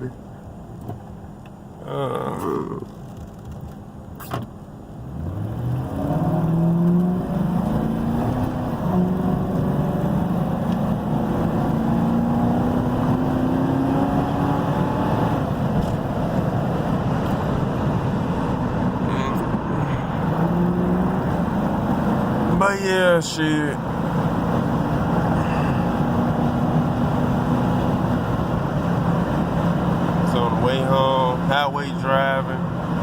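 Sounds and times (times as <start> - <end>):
road noise: 0.0 - 33.0
car engine accelerating: 4.9 - 33.0.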